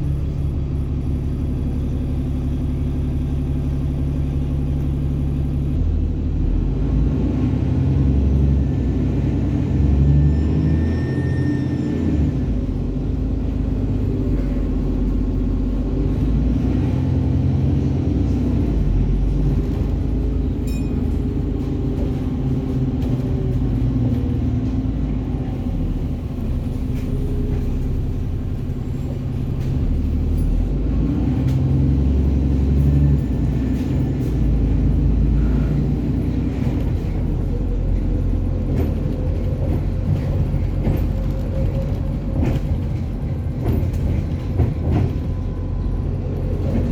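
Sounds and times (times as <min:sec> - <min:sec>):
bus diesel engine rumbling: 0:00.0 - 0:46.9.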